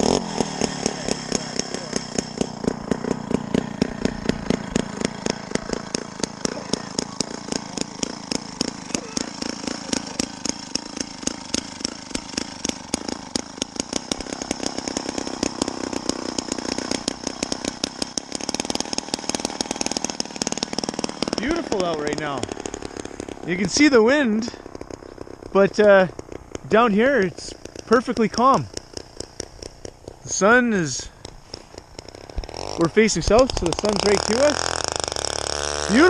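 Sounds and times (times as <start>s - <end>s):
two-stroke ice auger engine: 0.0s - 36.0s.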